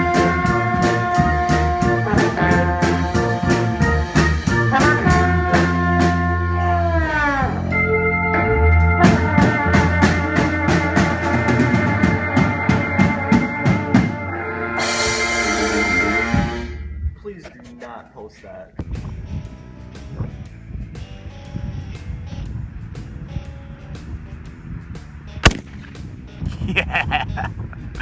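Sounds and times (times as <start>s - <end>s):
brass horns playing jazz: 0.0s - 17.0s
cymbal crash: 14.8s - 16.9s.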